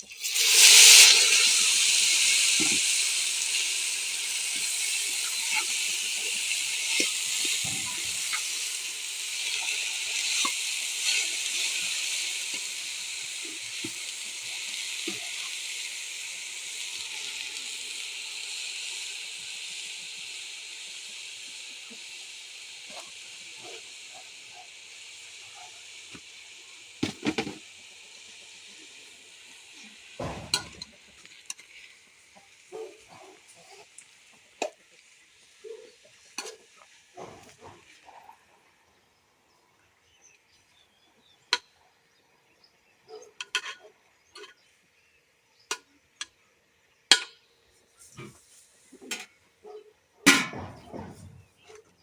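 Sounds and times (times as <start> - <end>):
food sizzling in oil: 0.0 - 38.0.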